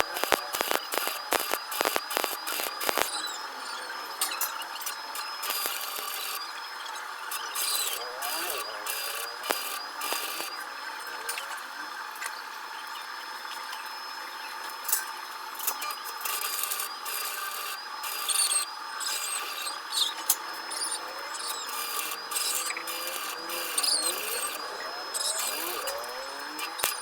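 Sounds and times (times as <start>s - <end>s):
faint steady hum: 0.0s - 12.8s.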